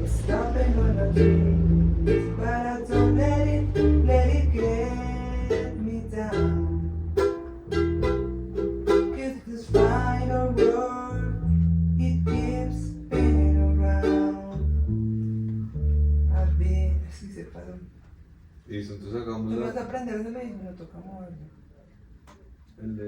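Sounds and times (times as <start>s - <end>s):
strummed ukulele-like strings: 0.0s - 16.4s
held bass notes: 0.0s - 17.3s.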